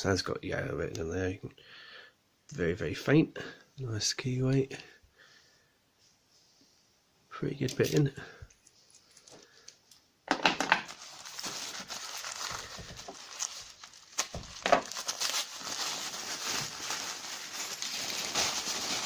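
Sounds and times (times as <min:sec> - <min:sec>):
packing material crinkling: 0:10.8 - 0:19.0.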